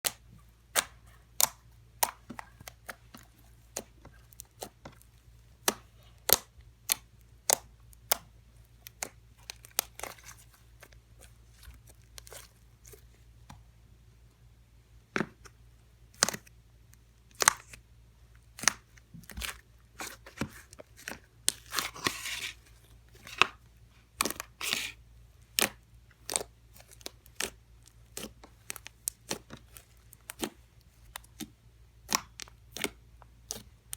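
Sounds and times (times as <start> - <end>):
slime crackling: 24.2 - 33.9.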